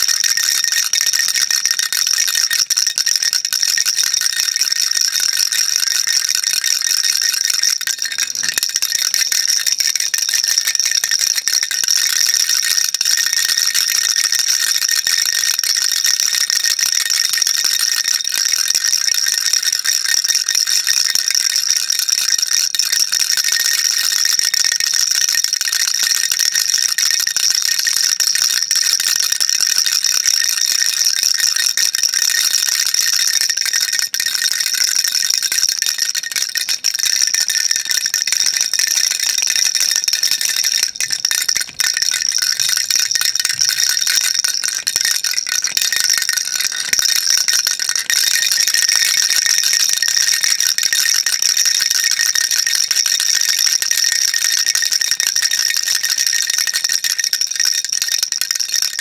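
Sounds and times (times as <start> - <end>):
baby rattle shaking: 0.0 - 14.4, 31.9 - 51.0.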